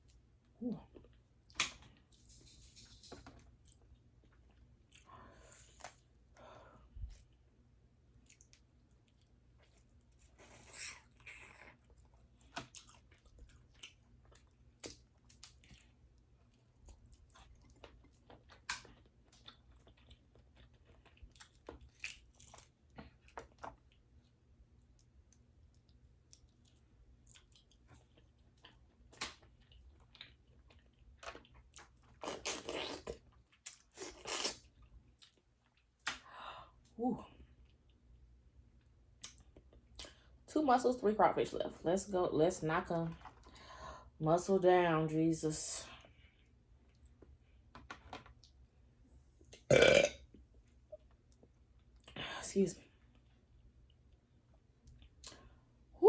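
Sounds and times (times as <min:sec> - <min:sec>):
chewing and mouth sounds: 0:08.0 - 0:36.2, 0:49.6 - 0:50.1.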